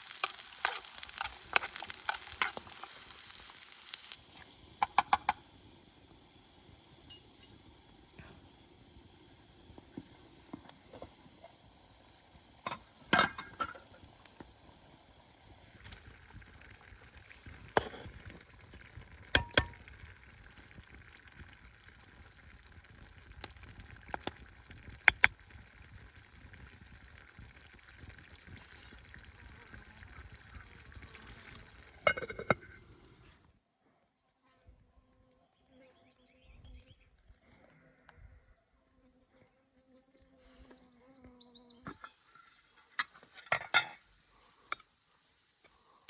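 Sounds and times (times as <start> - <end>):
stew bubbling in a pot: 0.0 - 33.4
utensils clinking against pot: 32.1 - 32.8, 43.4 - 44.0.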